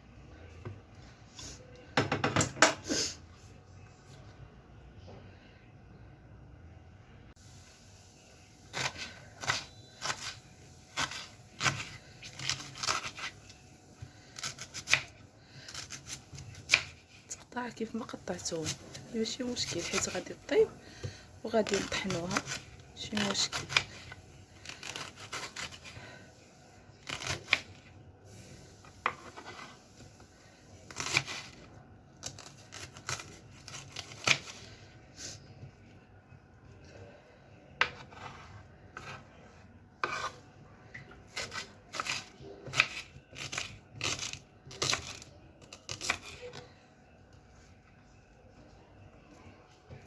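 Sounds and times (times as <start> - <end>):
knife cutting onions on board: 8.7 - 13.5, 14.4 - 17.2, 21.6 - 26.1, 27.0 - 27.8, 30.8 - 31.6, 40.0 - 40.4, 41.3 - 46.6.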